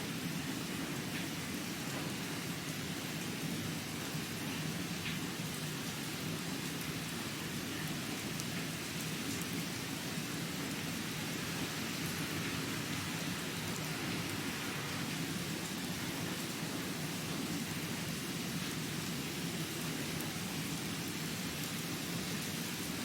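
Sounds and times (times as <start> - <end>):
steady rain: 0.0 - 23.0
faint raindrop ticks: 5.0 - 5.2, 7.8 - 9.6.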